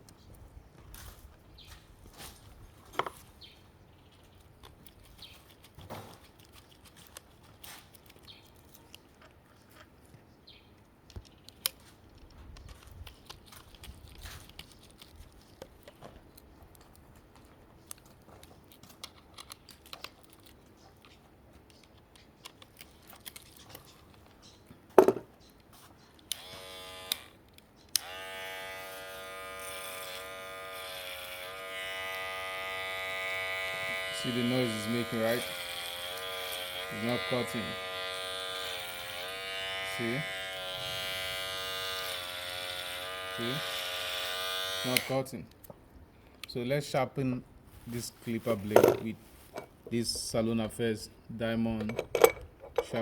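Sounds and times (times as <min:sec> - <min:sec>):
hair clippers handled with clicks: 0:26.3 - 0:27.3, 0:28.0 - 0:34.2, 0:40.2 - 0:45.6
electric clippers buzzing: 0:26.3 - 0:27.4, 0:28.0 - 0:45.3.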